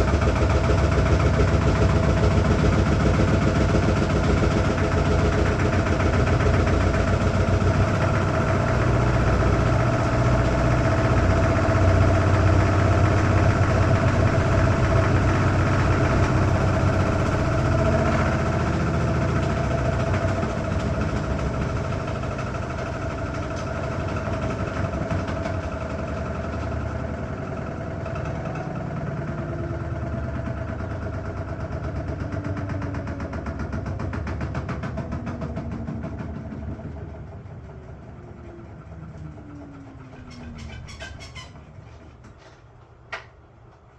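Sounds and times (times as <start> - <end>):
washing machine running: 0.0 - 43.9.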